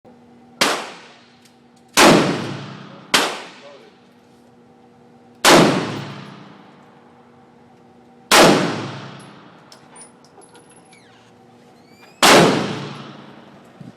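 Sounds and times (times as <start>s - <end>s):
faint steady hum: 0.1s - 13.9s
rifle shots: 0.6s - 1.3s, 2.0s - 3.8s, 5.4s - 6.6s, 8.3s - 9.5s, 12.2s - 13.5s.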